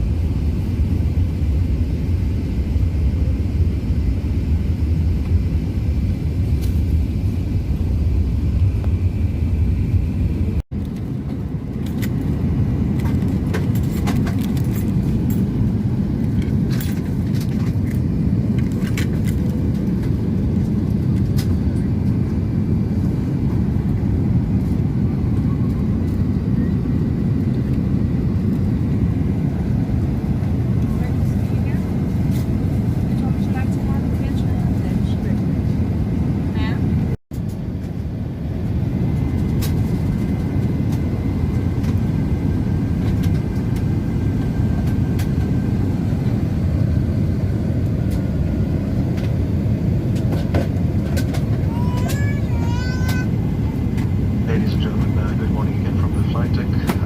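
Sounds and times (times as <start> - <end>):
aircraft cabin rumble: 0.0 - 57.0.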